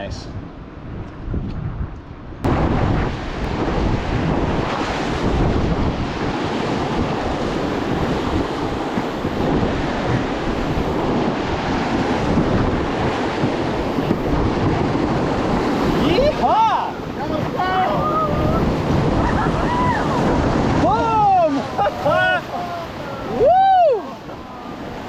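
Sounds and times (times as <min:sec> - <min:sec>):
wind buffeting microphone: 0:00.0 - 0:25.0
whitewater rapids rushing: 0:02.5 - 0:25.0.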